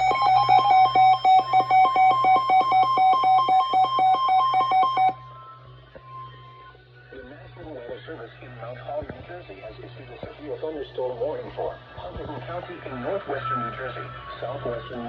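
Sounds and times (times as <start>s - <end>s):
two-tone electronic alarm: 0.0s - 5.4s.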